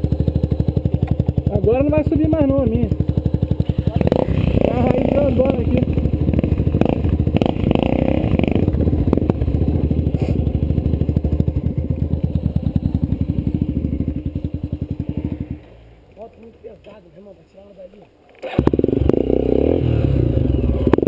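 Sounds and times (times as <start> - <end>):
clatter: 0.0 - 15.7, 20.7 - 21.0
motorcycle engine idling: 0.0 - 17.7, 18.6 - 21.0.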